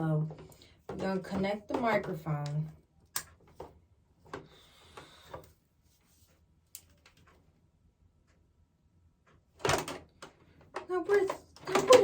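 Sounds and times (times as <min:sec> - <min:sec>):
plastic parts clicking and tapping: 0:00.2 - 0:05.5, 0:09.3 - 0:12.0.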